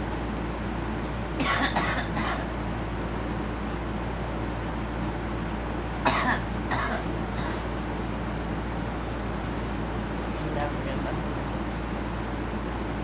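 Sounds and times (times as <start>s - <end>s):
steady low hum: 0.0s - 13.0s
girl coughing: 1.4s - 2.5s, 6.0s - 7.6s.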